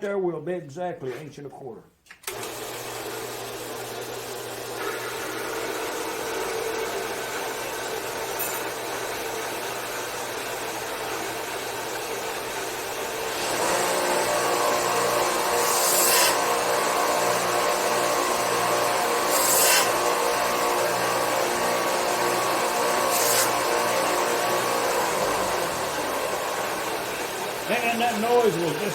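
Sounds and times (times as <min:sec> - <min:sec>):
belt sander running: 0:02.3 - 0:28.9
metal grinding on sander belt: 0:13.2 - 0:28.9.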